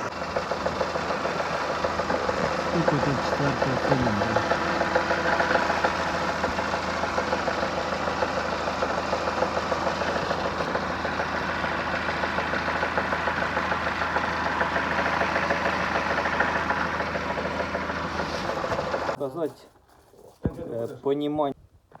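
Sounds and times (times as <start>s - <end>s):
rapid engine knock: 0.0s - 19.2s
car engine idling: 0.0s - 19.6s.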